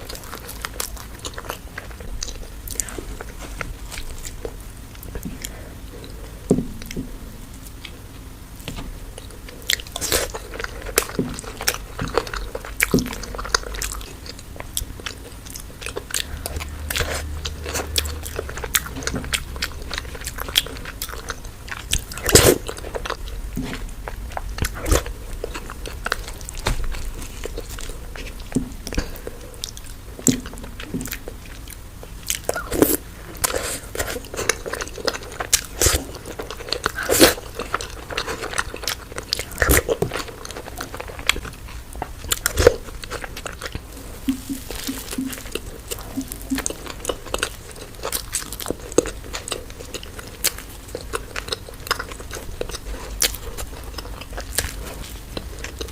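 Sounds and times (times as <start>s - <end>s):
chewing and crunching food: 0.0s - 55.9s.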